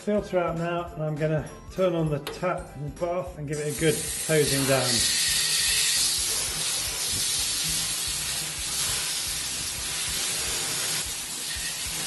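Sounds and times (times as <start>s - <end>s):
shower head spraying water: 3.6s - 12.0s.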